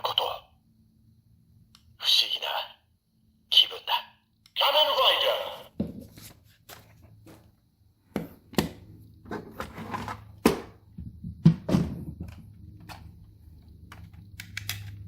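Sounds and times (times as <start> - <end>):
plastic toy parts clicking: 13.9 - 15.0.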